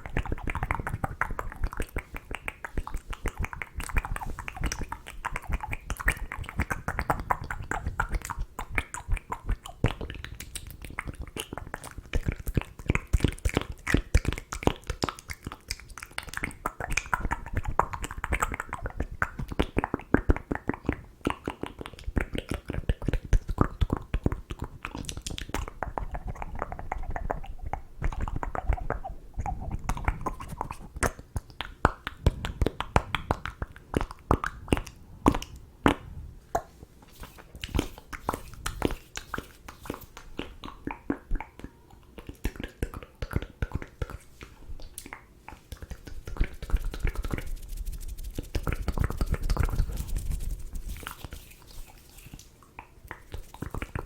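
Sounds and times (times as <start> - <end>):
wet mouth clicks and smacks: 36.6 - 54.0.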